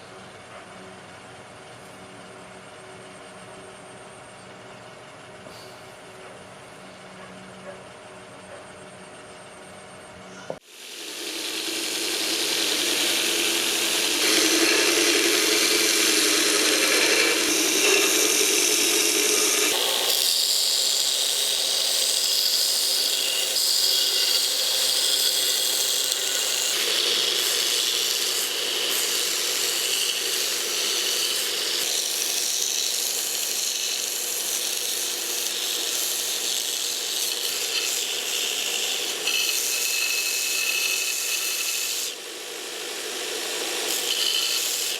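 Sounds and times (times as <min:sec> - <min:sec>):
power tool grinding: 0:10.5 - 0:44.9.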